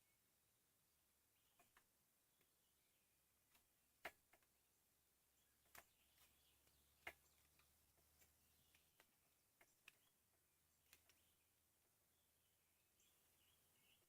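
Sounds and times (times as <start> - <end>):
faint sharp clicks: 10.8 - 11.3.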